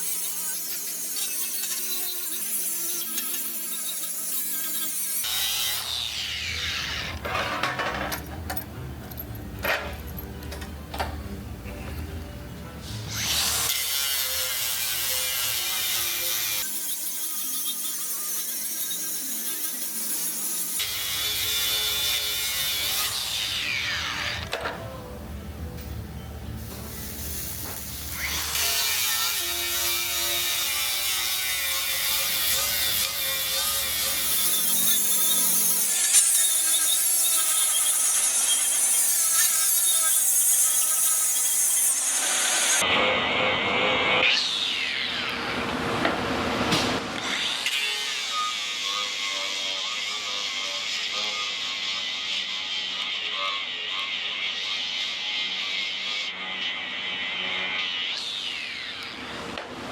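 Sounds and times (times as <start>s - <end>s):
angle grinder grinding: 0.0s - 10.5s, 26.8s - 42.9s, 47.2s - 59.3s
metallic clinks and knocks: 7.4s - 11.0s.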